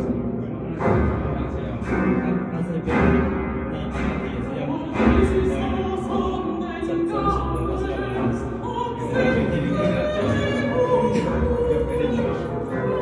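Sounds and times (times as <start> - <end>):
operatic singing through speakers: 0.0 - 13.0.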